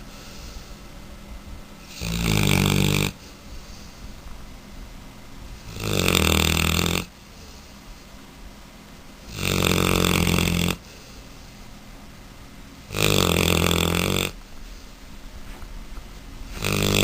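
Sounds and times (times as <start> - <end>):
puppy snoring: 1.8 - 3.8, 5.6 - 7.2, 9.2 - 11.0, 12.8 - 14.4, 16.5 - 17.0.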